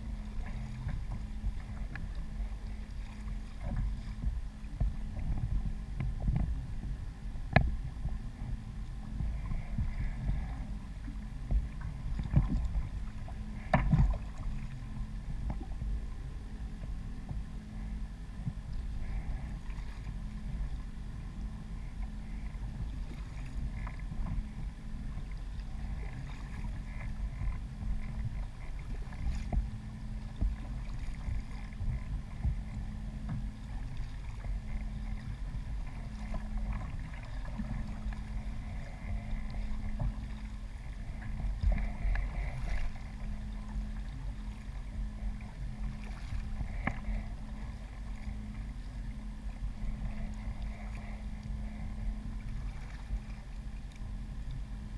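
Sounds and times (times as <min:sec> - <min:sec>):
low rumble: 0:00.0 - 0:54.9
water lapping against kayak hull: 0:00.0 - 0:54.9.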